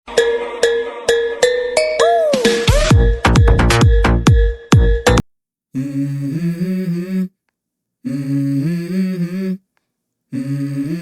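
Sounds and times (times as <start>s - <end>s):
person humming a tune: 1.9s - 2.7s, 5.8s - 7.4s, 8.0s - 9.6s, 10.3s - 11.0s.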